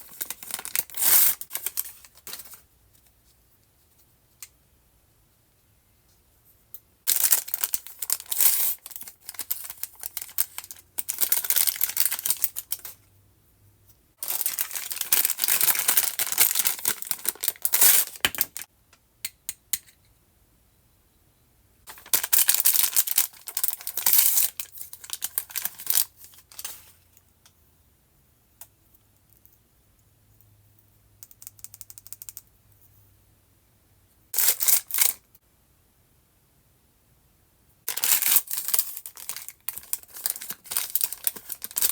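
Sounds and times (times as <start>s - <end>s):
packaging crinkling and tearing: 0.0s - 2.5s, 7.1s - 13.0s, 14.2s - 18.7s, 21.9s - 26.8s, 37.9s - 41.9s.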